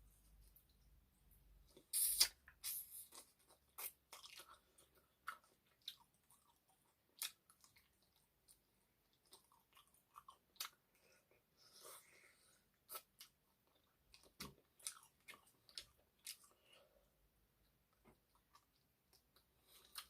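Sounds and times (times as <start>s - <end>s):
chewing with wet mouth clicks: 1.7s - 10.9s, 12.9s - 16.7s.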